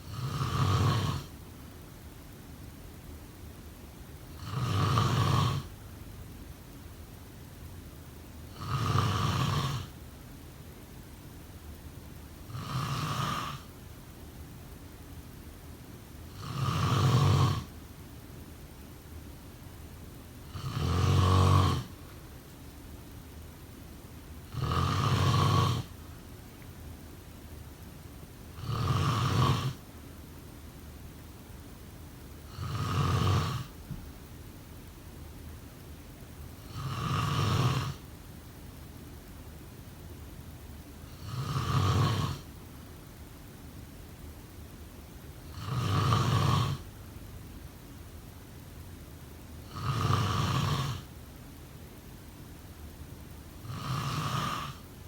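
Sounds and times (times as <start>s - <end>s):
person snoring: 0.0s - 1.3s, 4.4s - 5.7s, 8.5s - 9.9s, 12.5s - 13.7s, 16.3s - 17.7s, 20.5s - 22.0s, 24.5s - 25.9s, 28.6s - 29.8s, 32.5s - 33.8s, 36.6s - 38.0s, 41.1s - 42.5s, 45.5s - 46.9s, 49.6s - 51.1s, 53.6s - 54.8s
faint steady hiss: 0.0s - 55.0s.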